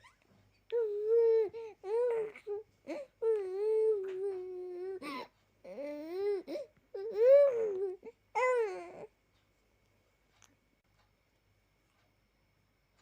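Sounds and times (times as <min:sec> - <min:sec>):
baby crying: 0:00.8 - 0:09.1.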